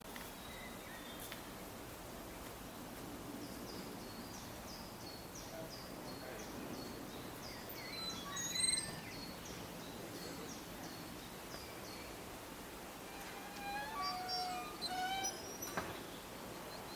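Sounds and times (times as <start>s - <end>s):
outdoor background noise: 0.0s - 16.9s
bird chirping loudly: 7.8s - 9.3s, 13.1s - 16.9s.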